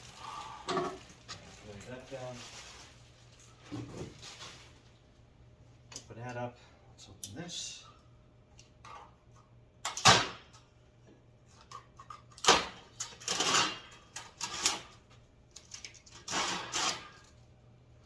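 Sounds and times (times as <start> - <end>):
plastic packaging crinkling: 0.0 - 5.2.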